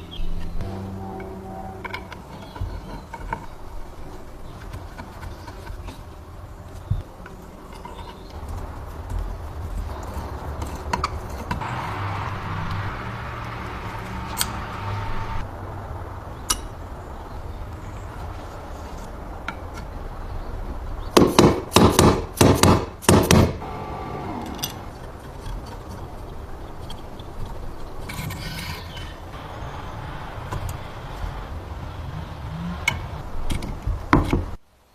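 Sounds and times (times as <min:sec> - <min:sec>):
loud sharp knocks: 0:21.2 - 0:23.6.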